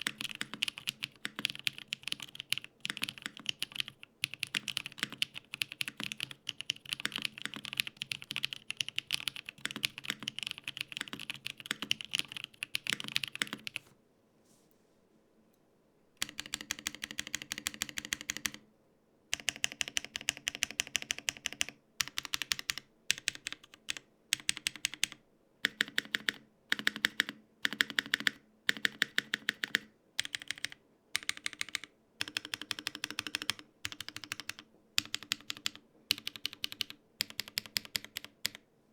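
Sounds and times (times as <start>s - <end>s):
mechanical keyboard typing: 0.0s - 13.8s, 16.2s - 18.6s, 19.3s - 38.6s.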